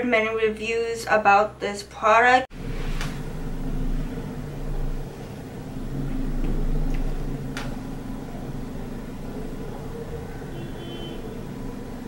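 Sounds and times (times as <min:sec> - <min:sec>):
low machinery hum: 0:02.5 - 0:12.0.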